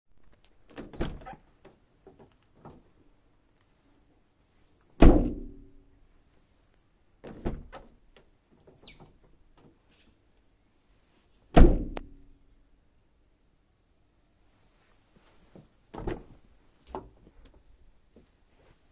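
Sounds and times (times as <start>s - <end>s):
car door slamming: 5.0s - 5.6s, 11.6s - 12.0s.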